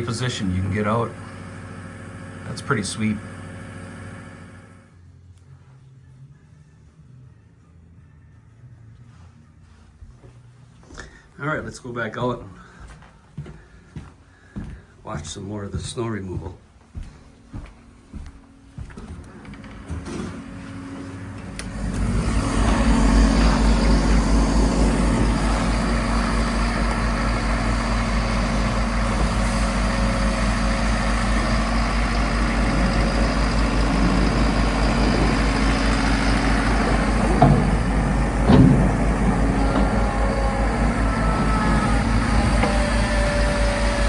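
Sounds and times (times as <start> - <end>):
diesel engine running: 0.0 - 5.0, 18.1 - 44.0.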